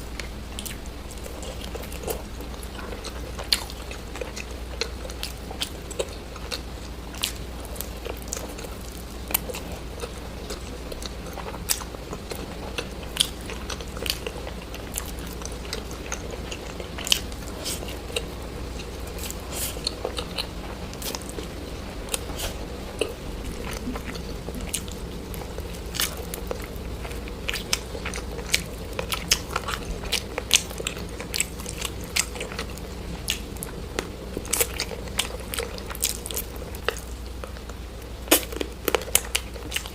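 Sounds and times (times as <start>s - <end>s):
crunchy bites and chewing: 0.1s - 39.9s.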